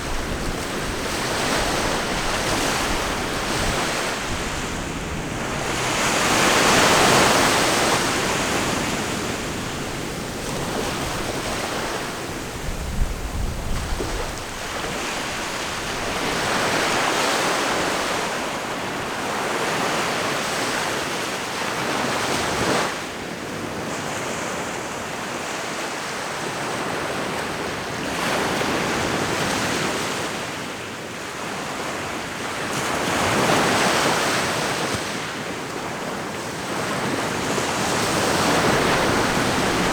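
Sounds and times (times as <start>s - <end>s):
wind rumble on microphone: 0.0s - 19.1s, 36.8s - 39.9s
ocean waves breaking: 0.0s - 21.3s, 36.5s - 39.9s.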